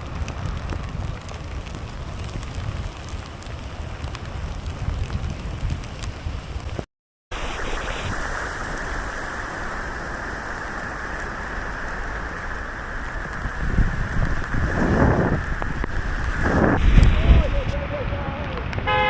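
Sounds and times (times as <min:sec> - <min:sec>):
wind on microphone: 0:00.0 - 0:06.8, 0:07.5 - 0:18.9
heavy rain hissing: 0:07.3 - 0:18.4.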